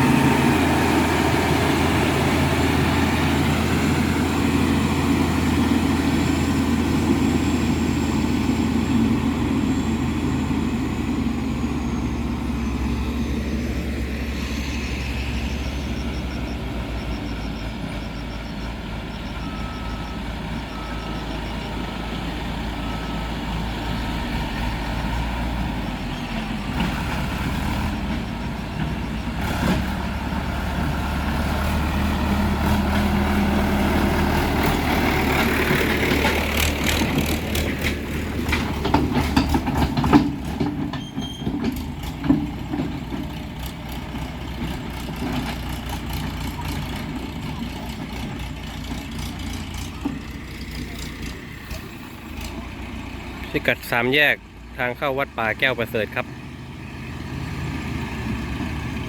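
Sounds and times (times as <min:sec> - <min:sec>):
diesel engine running: 0:00.0 - 0:59.0
faint beeps: 0:11.5 - 0:24.1.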